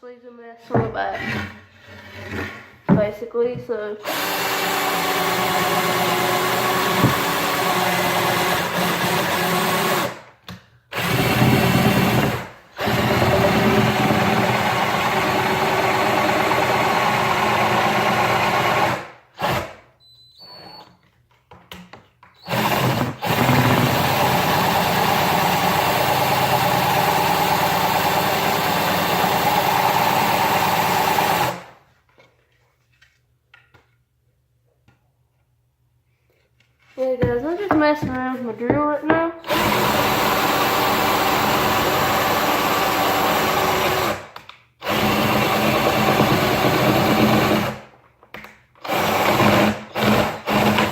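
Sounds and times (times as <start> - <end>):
power drill running: 4.0 - 10.3, 10.9 - 19.8, 22.4 - 31.8, 39.4 - 47.8, 48.8 - 50.9.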